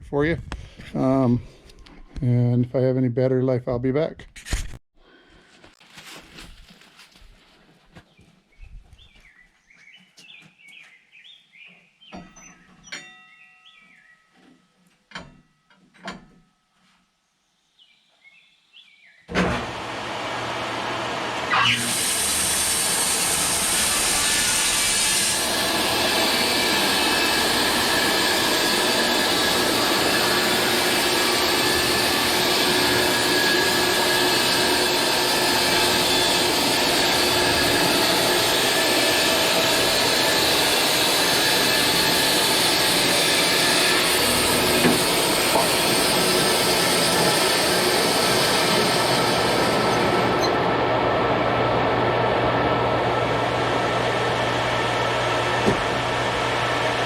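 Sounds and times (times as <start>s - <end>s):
bandsaw mill running: 19.3s - 57.0s.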